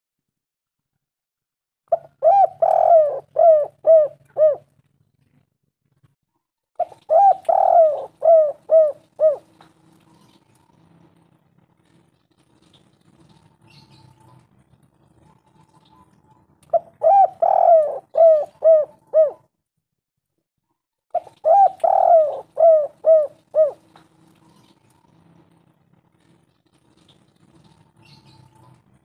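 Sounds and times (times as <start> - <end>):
dove cooing: 1.9 - 4.7, 6.8 - 10.5, 15.1 - 19.5, 21.1 - 24.9.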